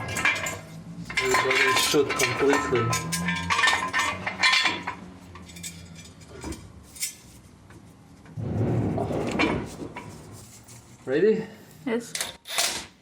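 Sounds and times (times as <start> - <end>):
metal tools clinking: 0.0 - 7.4
rough metal scraping: 0.0 - 7.5.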